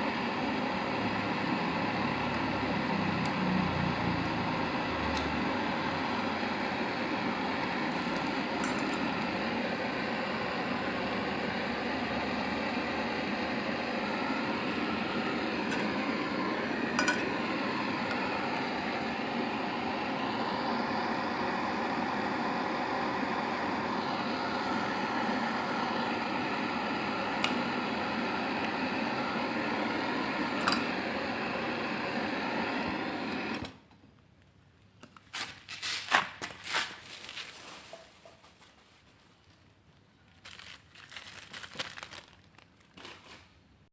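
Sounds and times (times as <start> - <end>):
gas flame gun hissing: 0.0 - 33.7.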